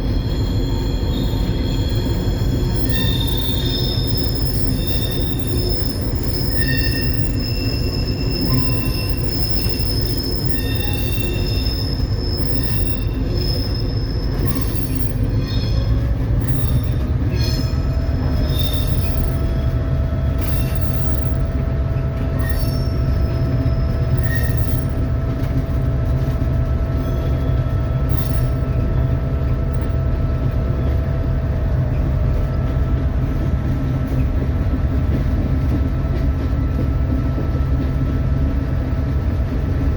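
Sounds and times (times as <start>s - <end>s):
high wheel squeals: 0.0s - 25.4s, 26.9s - 30.0s
steady whine: 0.0s - 30.5s
locomotive engine rumble: 0.0s - 39.9s.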